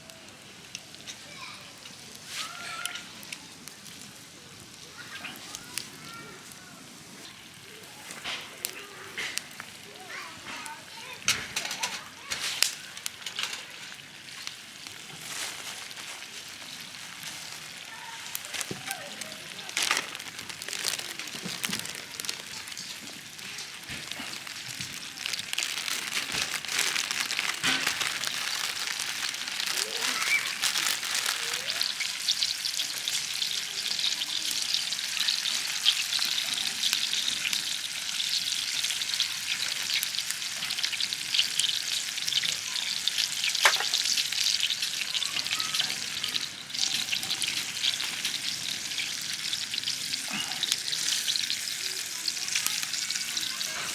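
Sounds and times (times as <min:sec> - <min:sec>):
food sizzling in a pan: 0:00.0 - 0:53.9
sharp pops: 0:43.6 - 0:44.0.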